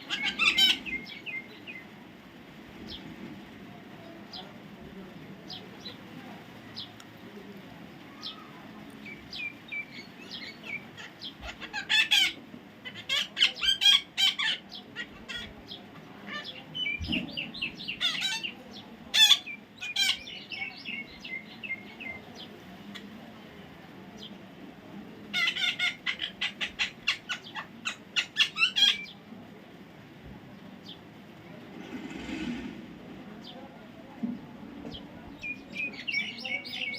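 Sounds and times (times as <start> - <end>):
parrot squawking: 0.0 - 1.0, 25.3 - 29.1.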